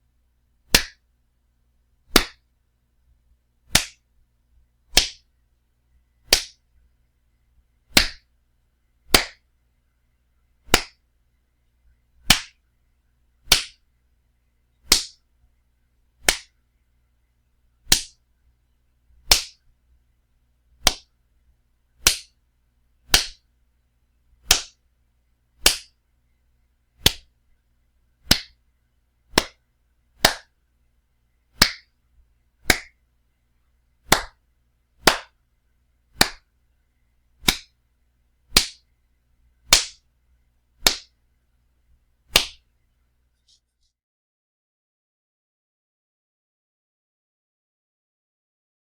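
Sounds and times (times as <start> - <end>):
loud wet slaps: 0.8 - 1.0, 2.2 - 2.4, 3.8 - 4.0, 6.3 - 6.6, 8.0 - 8.2, 9.2 - 9.4, 13.5 - 13.8, 14.9 - 15.2, 16.3 - 16.5, 17.9 - 18.2, 22.0 - 22.3, 24.5 - 24.8, 25.6 - 25.9, 28.3 - 28.6, 29.4 - 29.6, 30.2 - 30.5, 32.7 - 32.9, 34.1 - 34.4, 35.1 - 35.3, 36.2 - 36.4, 37.4 - 37.7, 38.6 - 38.8, 39.7 - 40.0, 40.8 - 41.1, 42.4 - 42.6.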